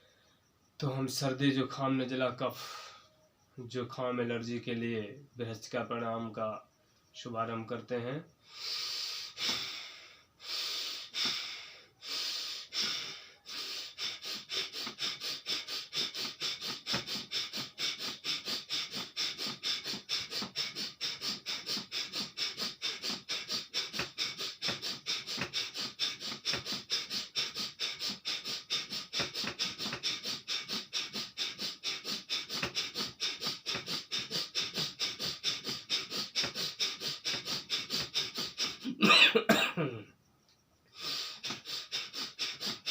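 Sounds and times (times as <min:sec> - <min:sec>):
person breathing forcefully through nose: 0:02.5 - 0:03.2, 0:08.4 - 0:39.0, 0:40.9 - 0:42.9.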